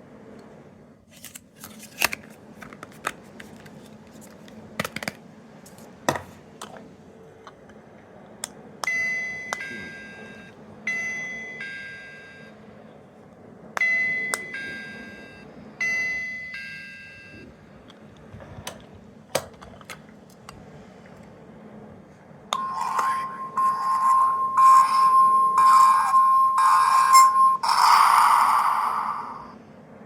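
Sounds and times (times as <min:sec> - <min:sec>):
electronic ding-dong chime: 0:22.6 - 0:27.7
high electronic beep: 0:22.6 - 0:28.1.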